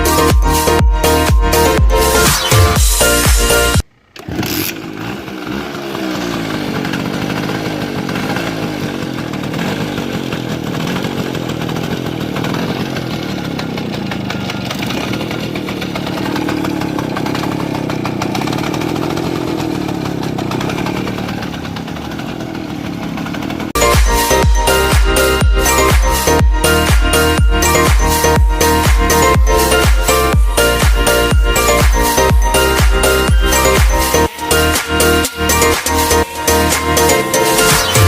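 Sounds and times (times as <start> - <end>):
music: 0.0 - 3.8, 23.8 - 38.0
two-stroke engine revving: 0.0 - 38.0.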